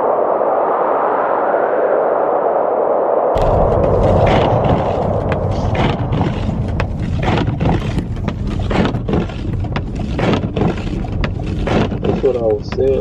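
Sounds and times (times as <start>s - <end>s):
car road rumble: 3.4s - 13.0s
knocks and crackles: 3.4s - 13.0s.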